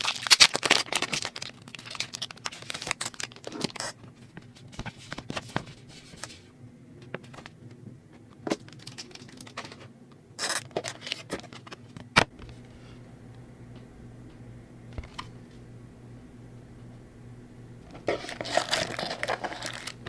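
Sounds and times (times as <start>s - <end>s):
foil wrapper crinkling: 0.0s - 6.3s, 18.0s - 20.0s.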